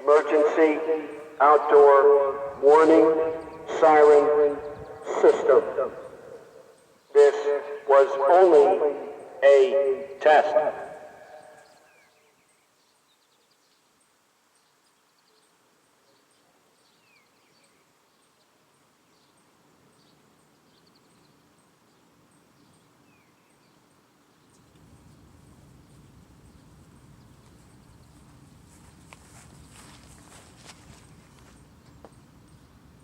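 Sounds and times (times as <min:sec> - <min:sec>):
siren voice message echo: 0:00.0 - 0:11.7.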